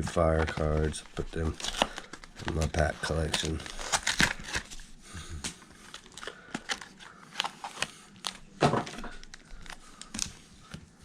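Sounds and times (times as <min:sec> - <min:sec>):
foil wrappers crinkling: 0:00.0 - 0:05.0.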